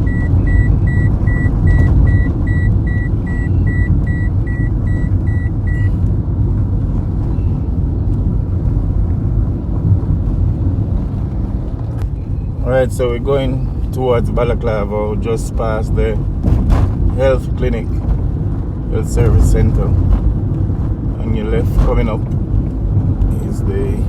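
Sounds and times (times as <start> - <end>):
rapid electronic warning beeps: 0.0 - 6.0
car road and engine rumble: 0.0 - 24.0.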